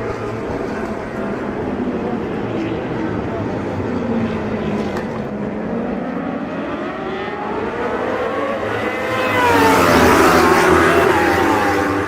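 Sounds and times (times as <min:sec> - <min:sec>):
racing motorcycle engines revving: 0:02.6 - 0:12.0.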